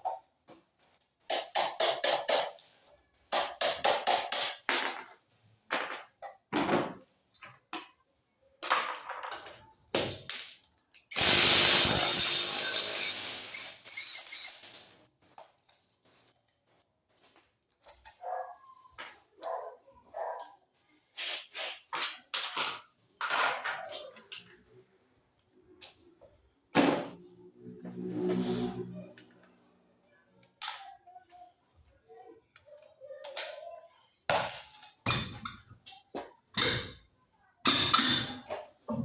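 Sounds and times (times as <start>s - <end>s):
power tool running: 11.2s - 13.8s
short bursts of tool noise: 11.2s - 14.2s.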